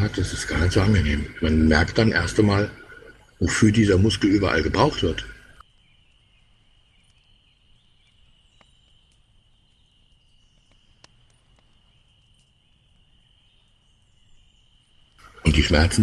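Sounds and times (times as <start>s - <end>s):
faint high-pitched whine: 0.0s - 5.6s, 8.2s - 16.0s
soft clicks: 10.6s - 12.6s.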